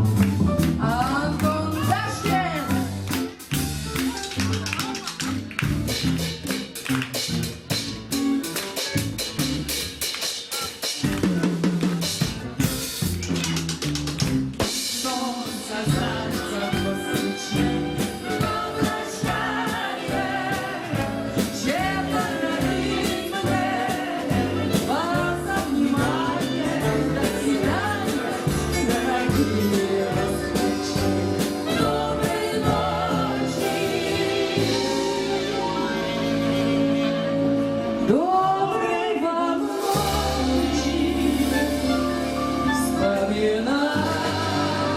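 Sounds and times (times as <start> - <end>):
drum kit beat with backing: 0.0 - 38.2, 39.6 - 44.9
person singing: 15.0 - 36.2, 38.0 - 44.9.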